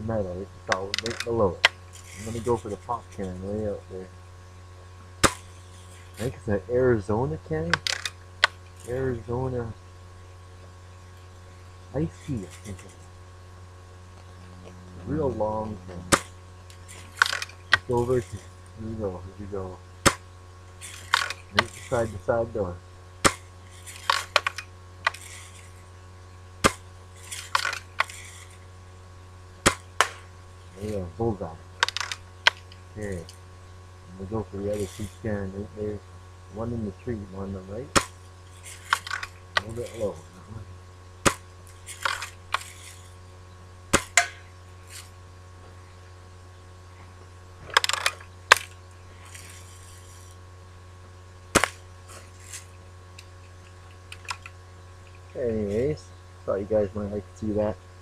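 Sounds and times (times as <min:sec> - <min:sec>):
steady low hum: 0:00.0 - 0:58.0
bb gun firing crack: 0:05.2 - 0:05.6, 0:16.0 - 0:16.4, 0:23.2 - 0:25.6, 0:26.6 - 0:28.4, 0:29.6 - 0:31.0, 0:37.9 - 0:40.0, 0:41.2 - 0:42.7, 0:43.9 - 0:44.5, 0:51.5 - 0:51.9.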